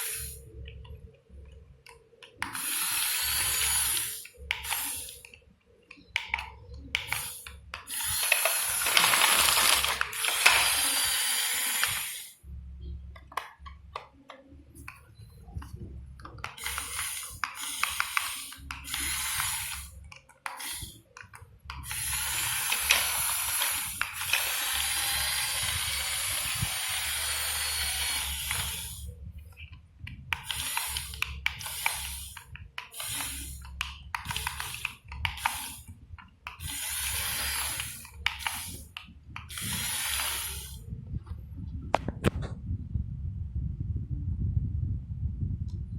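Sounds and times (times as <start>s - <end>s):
small model motors hissing: 0.0s - 0.4s, 2.5s - 5.2s, 7.0s - 12.4s, 16.5s - 21.1s, 21.8s - 29.1s, 30.4s - 35.9s, 36.5s - 40.8s.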